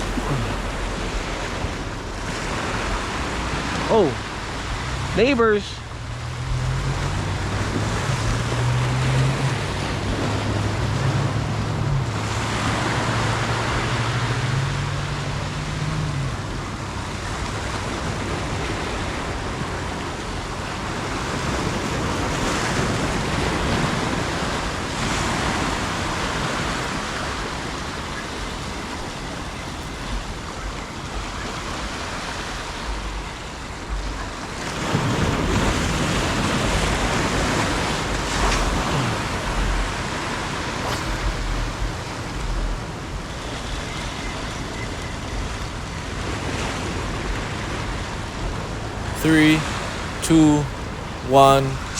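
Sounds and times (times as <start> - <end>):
ocean surf breaking on shore: 0.0 - 51.9
wind on microphone: 6.2 - 51.2
low steady hum: 37.9 - 46.0.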